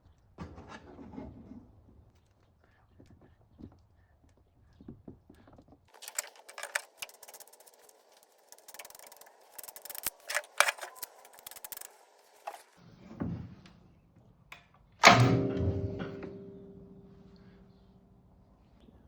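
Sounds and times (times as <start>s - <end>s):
mechanical clicking and scraping: 5.9s - 12.8s.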